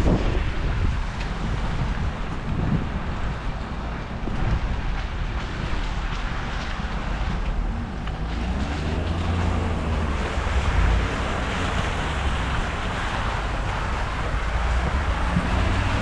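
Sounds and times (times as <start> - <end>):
street traffic: 0.0 - 16.0
wind rumbling on microphone: 0.0 - 16.0
vehicle engine: 4.6 - 16.0.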